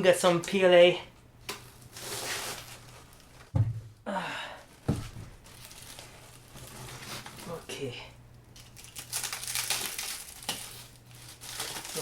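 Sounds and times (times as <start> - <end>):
dull thumps: 3.4 - 4.0
packaging rustling: 5.0 - 7.7, 8.6 - 12.0.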